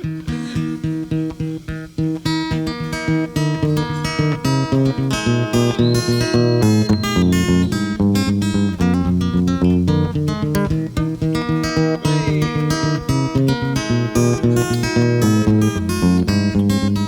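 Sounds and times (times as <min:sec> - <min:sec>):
acoustic guitar strumming: 0:00.0 - 0:17.0.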